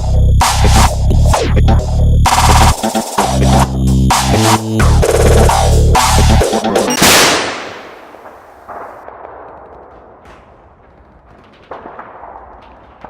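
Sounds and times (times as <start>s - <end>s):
loud gunshot-like bang: 7.0s - 10.5s.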